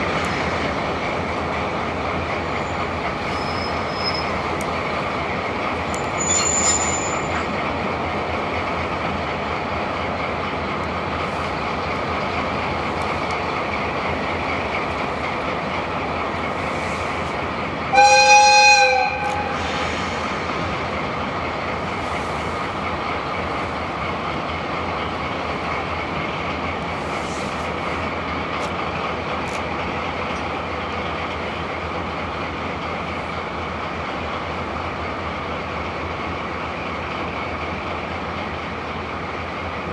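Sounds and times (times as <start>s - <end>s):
train rolling: 0.0s - 39.9s
faint wheel squeal: 2.6s - 4.6s, 5.9s - 7.6s
train horn blast: 17.9s - 20.2s.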